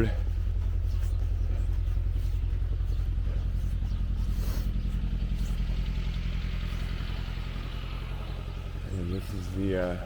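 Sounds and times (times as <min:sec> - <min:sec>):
engine idling: 0:00.0 - 0:10.0.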